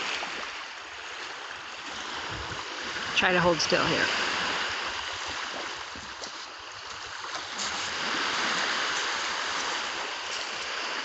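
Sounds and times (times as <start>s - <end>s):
waves washing onto shore: 0.0s - 11.0s.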